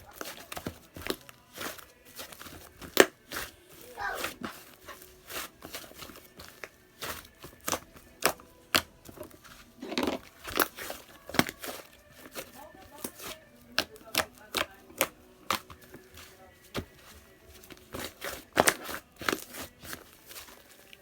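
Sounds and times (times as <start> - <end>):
slime squeak: 3.8 - 4.5.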